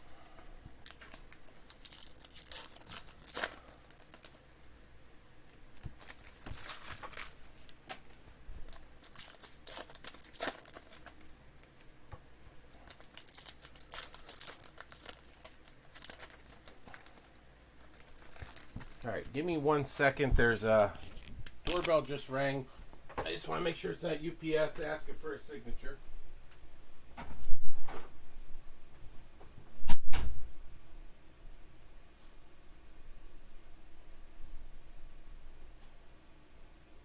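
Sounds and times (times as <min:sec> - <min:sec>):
plastic wrappers crinkling and tearing: 0:00.8 - 0:11.9, 0:12.7 - 0:19.6, 0:20.4 - 0:22.2.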